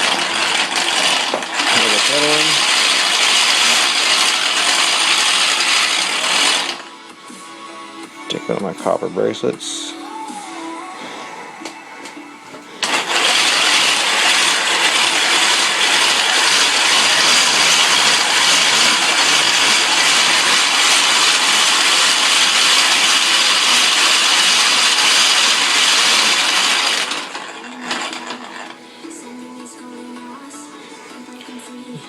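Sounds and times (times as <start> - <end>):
grinding wheel on metal: 0.0 - 7.0, 12.8 - 28.8.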